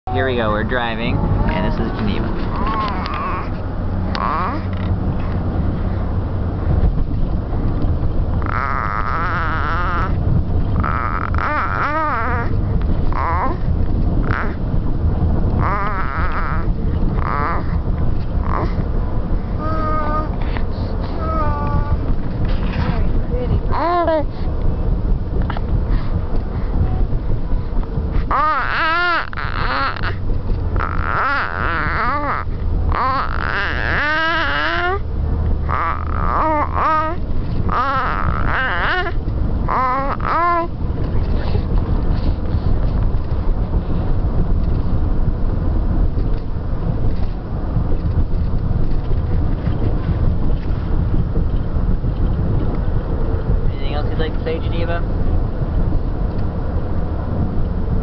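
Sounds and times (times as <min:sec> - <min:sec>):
car interior rumble: 0:00.0 - 0:58.0
baby squealing: 0:00.2 - 0:04.7, 0:08.4 - 0:10.2, 0:10.8 - 0:12.6, 0:13.2 - 0:13.6, 0:14.2 - 0:14.6, 0:15.6 - 0:17.8, 0:19.6 - 0:20.4, 0:21.1 - 0:22.1, 0:28.3 - 0:30.2, 0:30.8 - 0:40.8.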